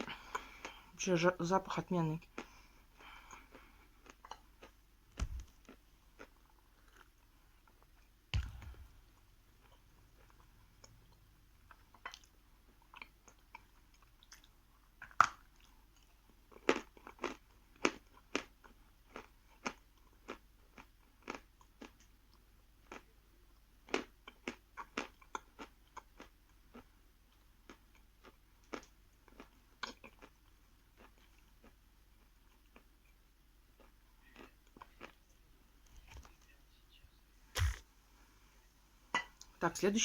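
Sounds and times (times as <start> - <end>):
chewing crunchy chalk: 37.6 - 37.8.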